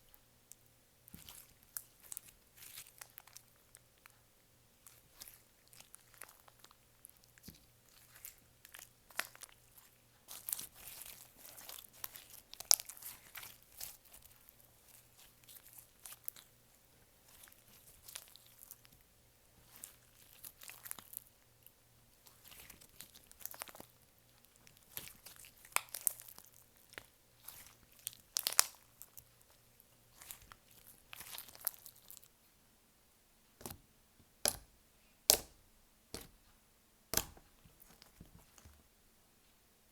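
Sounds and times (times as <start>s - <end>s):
slime crackling and popping: 4.8s - 16.5s, 17.2s - 19.0s, 19.6s - 32.3s, 37.1s - 38.2s.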